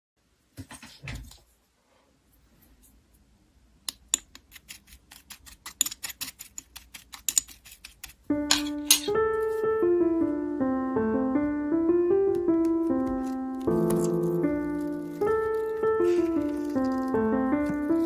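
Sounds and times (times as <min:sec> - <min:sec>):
piano music: 0:08.3 - 0:18.0.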